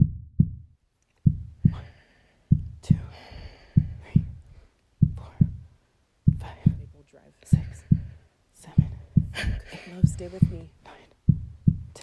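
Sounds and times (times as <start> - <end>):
heartbeat thumps: 0.0 - 12.0
woman breathing: 1.5 - 6.8, 7.4 - 11.0.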